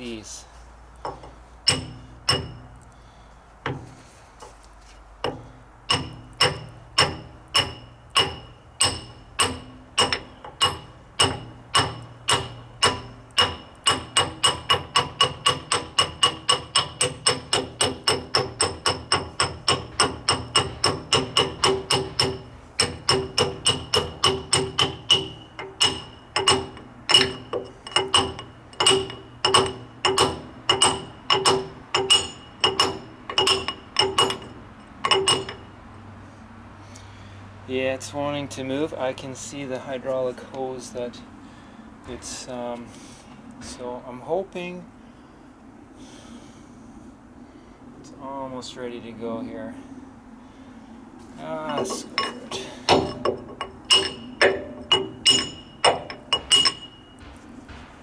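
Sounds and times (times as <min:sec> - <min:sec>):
hammer striking steel pin: 0:01.0 - 0:02.8, 0:05.2 - 0:35.7, 0:51.6 - 0:58.0.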